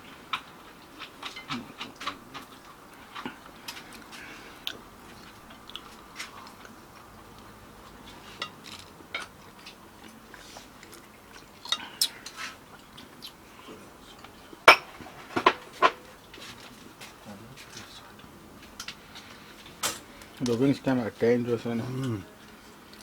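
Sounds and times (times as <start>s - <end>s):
faint chewing: 0.1s - 23.0s
cutlery clinking on plates: 8.1s - 9.7s, 14.6s - 16.6s, 19.7s - 20.1s.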